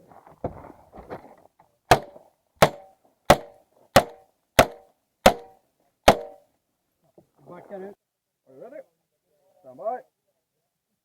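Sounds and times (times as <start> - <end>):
pistol shots: 1.9 - 5.5, 6.1 - 6.4.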